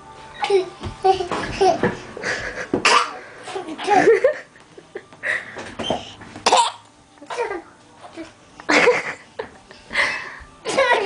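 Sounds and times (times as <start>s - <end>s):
baby sneezing: 2.8s - 3.2s, 5.8s - 7.6s.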